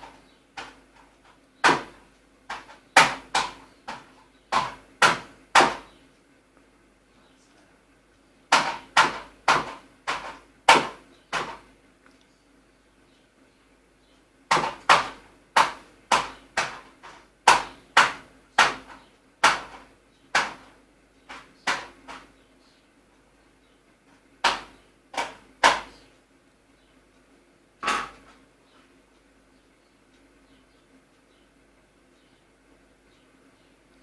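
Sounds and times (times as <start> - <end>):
sharp knocks: 0.0 - 6.0, 8.5 - 11.7, 14.5 - 22.3, 24.4 - 26.0, 27.8 - 28.4
faint steady hum: 0.0 - 34.0.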